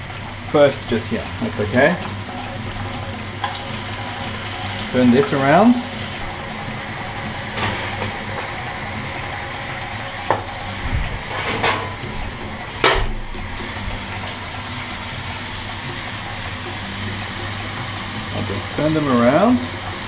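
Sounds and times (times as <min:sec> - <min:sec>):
chicken sizzling in frying pan: 0:00.0 - 0:20.0
utensil scraping pan: 0:11.2 - 0:12.3.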